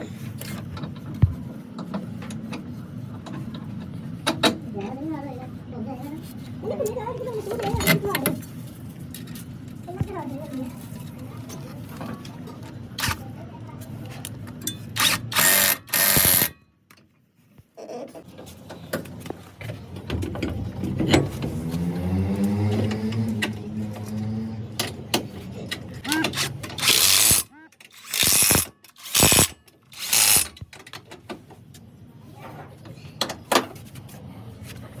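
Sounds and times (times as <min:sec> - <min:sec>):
mechanical clicks: 0:15.0 - 0:16.5, 0:26.1 - 0:30.6
power tool running: 0:15.0 - 0:16.5, 0:26.8 - 0:30.6
short loud bursts of noise: 0:28.0 - 0:30.5.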